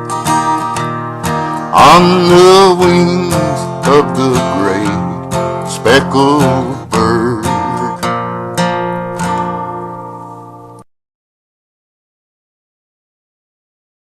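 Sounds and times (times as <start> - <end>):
acoustic guitar strumming: 0.0 - 10.8.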